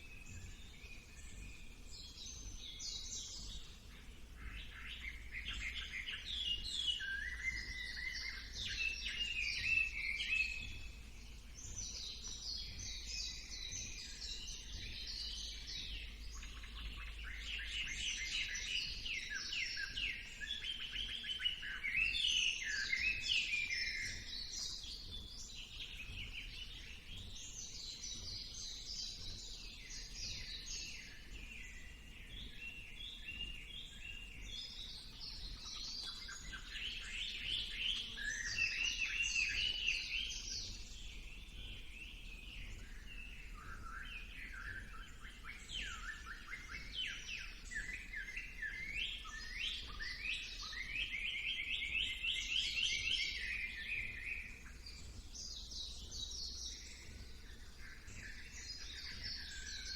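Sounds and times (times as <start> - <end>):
songbirds chirping and trilling: 0.0 - 59.9.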